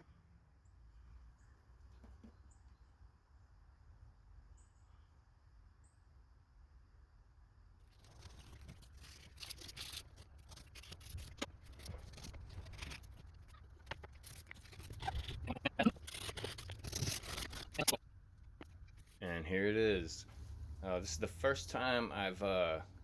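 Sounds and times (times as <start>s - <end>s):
tools scratching and clicking: 7.9s - 19.2s.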